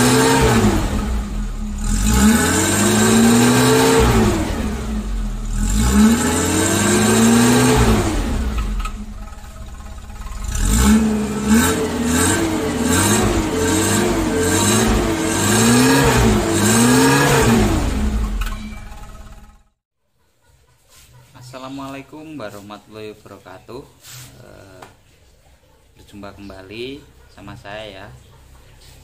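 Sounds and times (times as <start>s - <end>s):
car engine revving: 0.0s - 19.8s.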